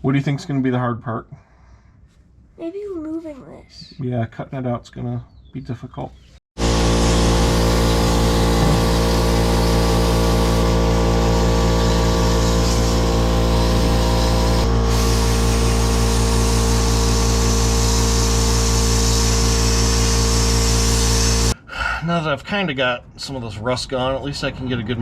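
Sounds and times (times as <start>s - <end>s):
air grinder grinding metal: 6.6s - 21.6s.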